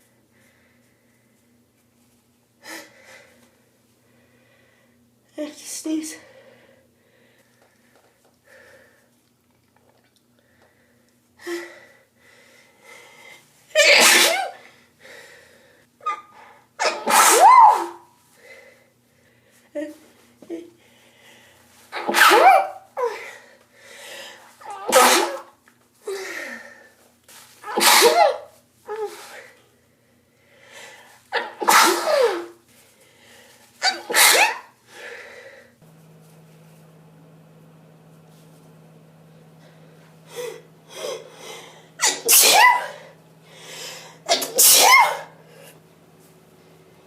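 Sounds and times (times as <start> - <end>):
person sneezing: 13.8 - 14.7, 16.0 - 18.0, 21.9 - 23.4, 24.6 - 25.6, 27.6 - 29.6, 31.3 - 32.6, 33.8 - 34.8, 40.2 - 45.8
short catching breaths: 39.5 - 42.0, 42.9 - 44.3
sharp in-breath: 42.9 - 44.3.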